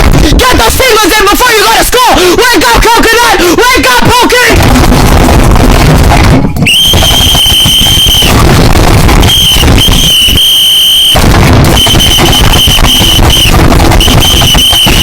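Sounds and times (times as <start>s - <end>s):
harsh crackling noise: 0.0s - 1.3s, 4.0s - 15.0s
shrill alarm tone blasts: 6.6s - 15.0s.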